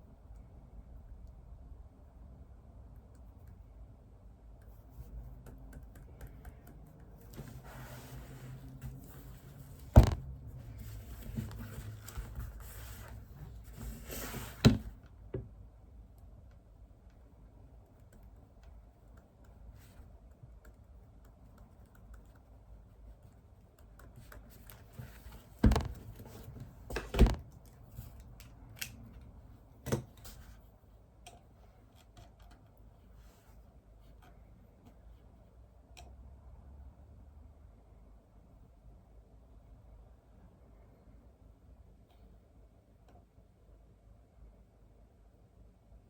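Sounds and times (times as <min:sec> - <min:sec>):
faint writing or typing taps: 0:04.6 - 0:07.6, 0:17.8 - 0:25.2.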